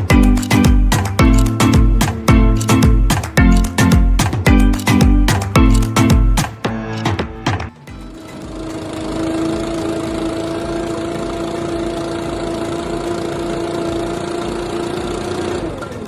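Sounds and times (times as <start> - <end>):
leaf blower engine running: 7.8 - 16.0.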